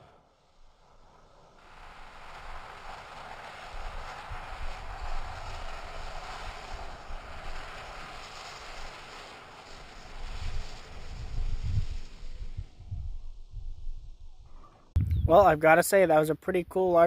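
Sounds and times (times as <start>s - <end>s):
fire extinguisher venting hiss: 0.0s - 14.4s
low rumbles: 11.1s - 15.7s.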